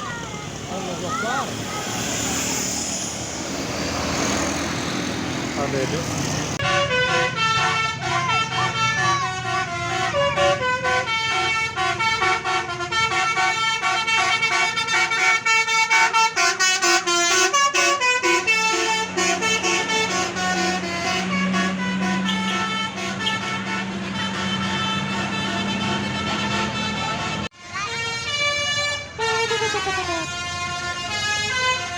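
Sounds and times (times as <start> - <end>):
bus engine running: 0.0 - 31.9
bus horn playing a tune: 6.6 - 31.9.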